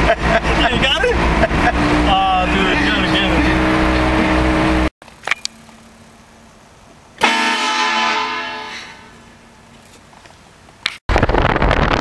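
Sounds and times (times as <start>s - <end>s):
train horn blast: 7.2s - 9.3s.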